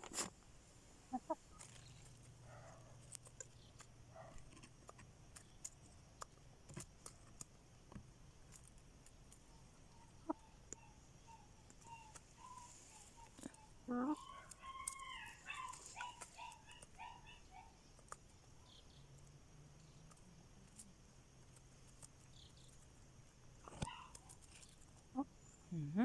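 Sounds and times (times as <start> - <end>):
faint ticks and rustles: 0.0 - 25.6
hen clucking softly: 1.0 - 1.8, 9.9 - 17.8, 25.1 - 25.4.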